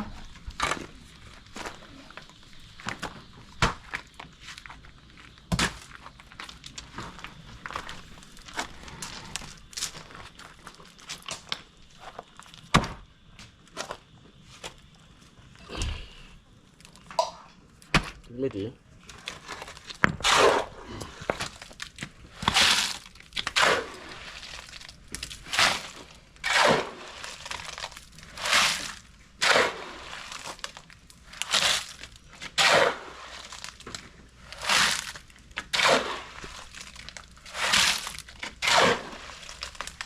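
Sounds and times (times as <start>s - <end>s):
shovels scraping concrete mix: 18.0s - 40.0s.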